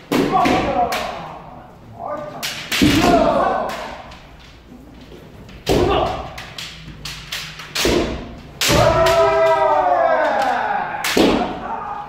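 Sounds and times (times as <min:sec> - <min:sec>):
people shouting: 0:00.1 - 0:04.2, 0:05.7 - 0:06.6, 0:07.9 - 0:12.0
bamboo sword strikes: 0:02.4 - 0:04.0, 0:05.6 - 0:11.6.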